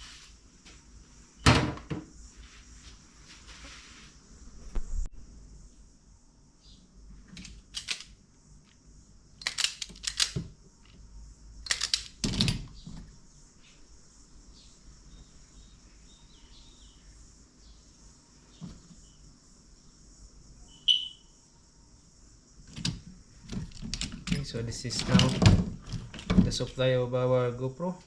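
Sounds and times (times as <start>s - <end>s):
steady high hiss: 0.0s - 12.2s
clicks and rattles of small parts: 7.3s - 8.8s, 9.4s - 11.0s, 11.6s - 12.8s, 22.7s - 26.8s.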